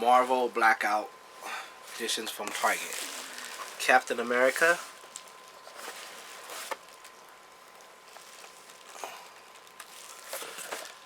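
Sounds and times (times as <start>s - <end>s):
packaging taps and rustles: 2.4s - 11.0s.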